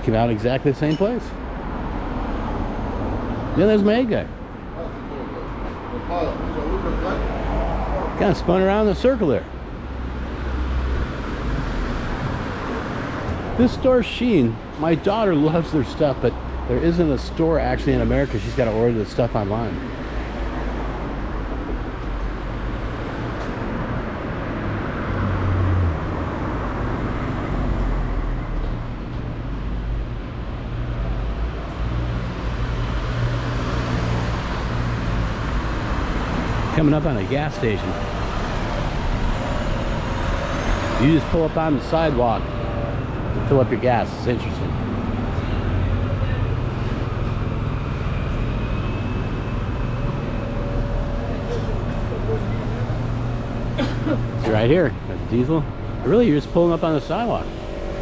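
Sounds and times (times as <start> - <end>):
city traffic rumble: 0.0 - 58.0
low engine drone: 36.5 - 58.0.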